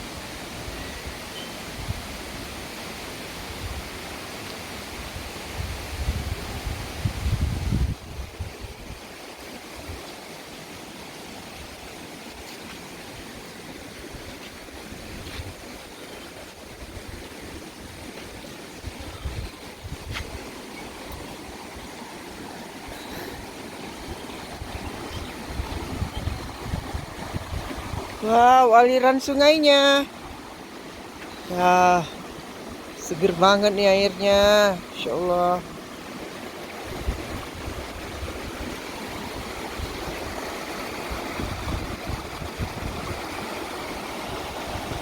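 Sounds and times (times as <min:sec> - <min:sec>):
stream rushing: 0:00.0 - 0:45.0.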